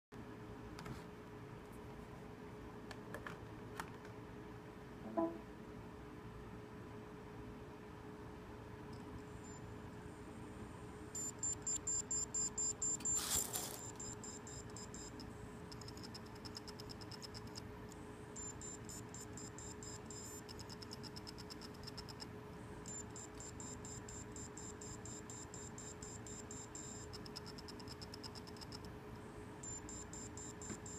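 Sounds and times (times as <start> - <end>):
hard drive beeping: 11.1 - 29.0, 29.6 - 30.9.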